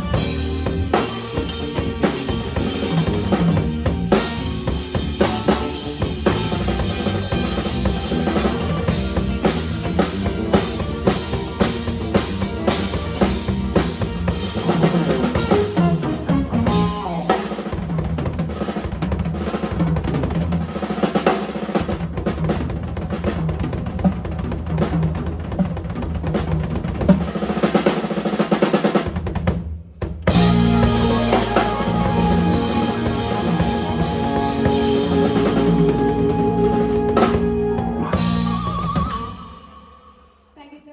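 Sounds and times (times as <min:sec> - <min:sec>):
backing track with bass line: 0:00.0 - 0:18.2, 0:30.3 - 0:39.6
drum kit solo: 0:00.0 - 0:40.7.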